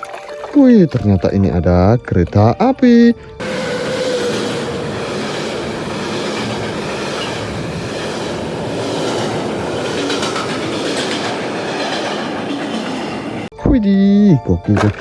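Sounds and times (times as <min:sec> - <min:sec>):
train wheels clattering on track: 0:03.4 - 0:13.5
sharp rail clicks: 0:08.0 - 0:13.2.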